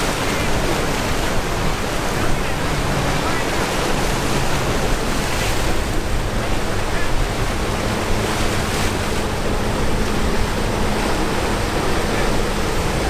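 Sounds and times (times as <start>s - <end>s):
boat engine low hum: 0.0s - 13.0s
waves breaking: 0.0s - 13.0s.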